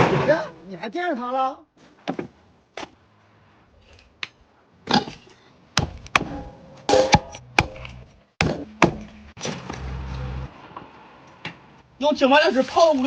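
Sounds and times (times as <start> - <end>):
sharp knocks and thuds: 2.0 - 3.0, 5.8 - 9.8.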